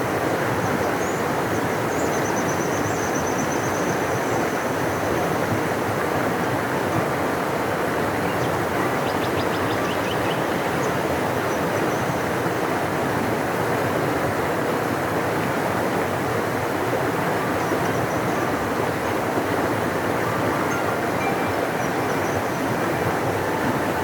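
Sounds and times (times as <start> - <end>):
large river rushing: 10.2 - 24.0.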